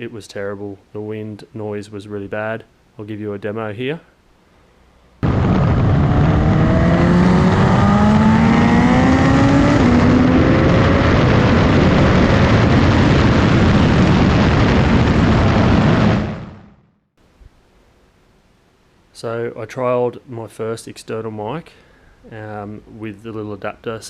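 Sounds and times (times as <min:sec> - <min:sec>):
heavy wind noise on microphone: 0:05.2 - 0:16.8
motorcycle engine accelerating: 0:05.2 - 0:17.0.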